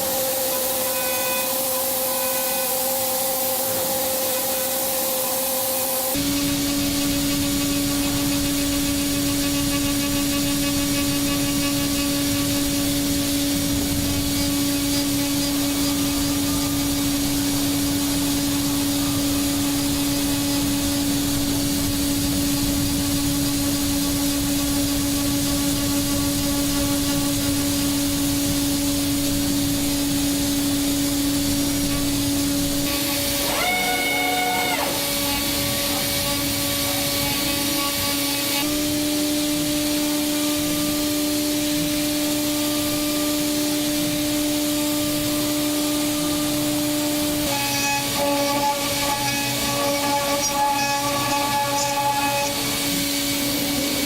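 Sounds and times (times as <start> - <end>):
cnc machine motor whine: 0.0 - 54.0
hiss of cutting and coolant: 0.0 - 54.0
higher whine: 6.2 - 38.0.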